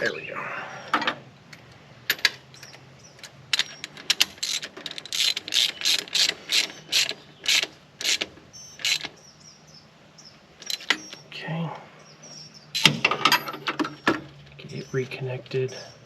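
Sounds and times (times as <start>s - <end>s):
hand ratchet clicking: 3.2s - 9.1s.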